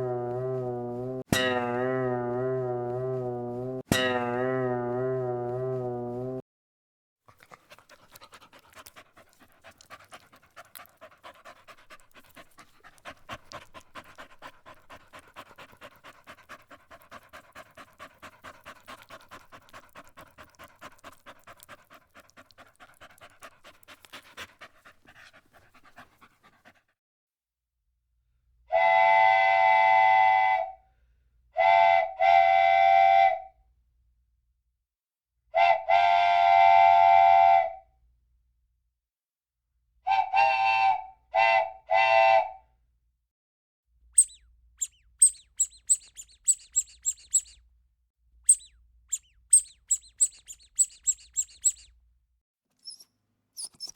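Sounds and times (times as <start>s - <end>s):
dog panting: 7.3s - 27.0s, 44.2s - 47.6s, 48.5s - 51.9s, 52.8s - 53.9s
train whistle blasts: 28.7s - 30.8s, 31.6s - 33.5s, 35.6s - 37.8s, 40.1s - 42.6s.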